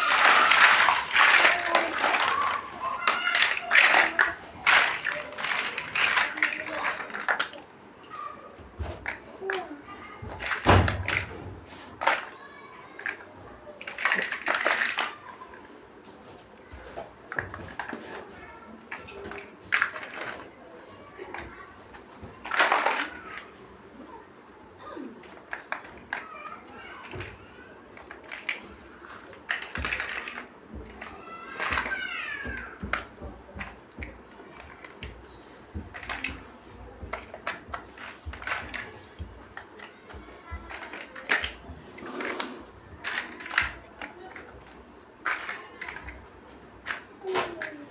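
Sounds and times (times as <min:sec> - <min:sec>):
plastic bricks clicking and clattering: 0:00.0 - 0:07.7, 0:08.9 - 0:11.4, 0:12.0 - 0:12.4, 0:13.0 - 0:15.6, 0:16.8 - 0:20.6, 0:21.3 - 0:23.6, 0:25.2 - 0:27.4, 0:28.0 - 0:47.9.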